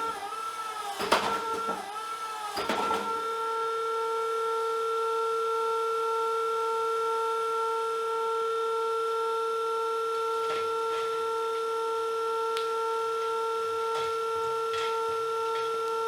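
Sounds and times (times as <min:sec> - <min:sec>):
hydraulic pump motor whine: 0:00.0 - 0:16.0.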